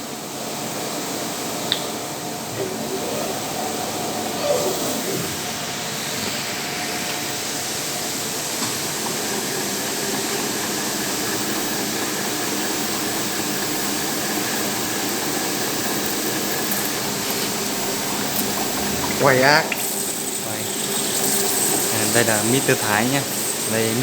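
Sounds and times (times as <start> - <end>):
drilling machine running: 2.4 - 24.0
faint high whine: 11.4 - 24.0.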